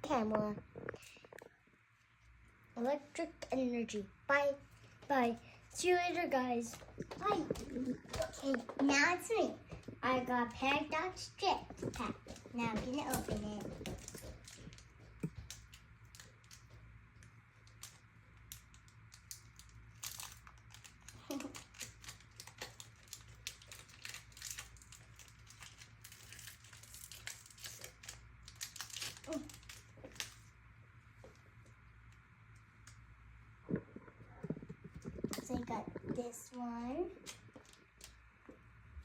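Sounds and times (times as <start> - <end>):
foil wrapper crinkling and tearing: 11.8 - 30.5.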